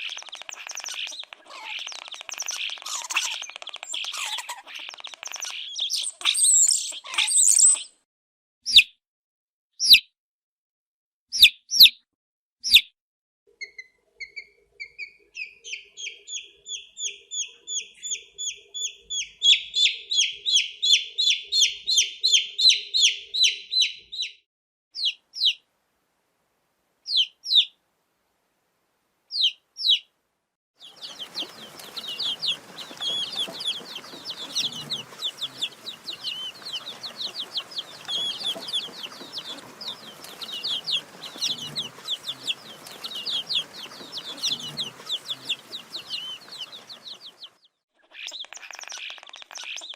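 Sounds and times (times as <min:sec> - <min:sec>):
chicks cheeping: 0:00.0 - 0:07.9, 0:13.6 - 0:24.4, 0:25.0 - 0:25.6, 0:27.1 - 0:27.7, 0:29.3 - 0:30.1, 0:30.8 - 0:49.9
background hiss: 0:30.8 - 0:47.4.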